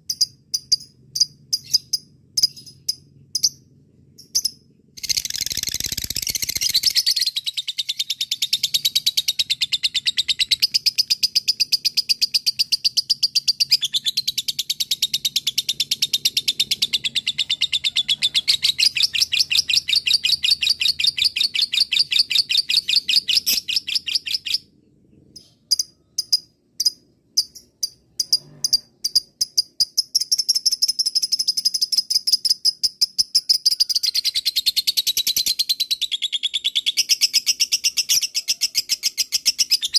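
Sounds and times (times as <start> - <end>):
lovebird chattering trill: 0.1 - 3.6, 4.2 - 24.7.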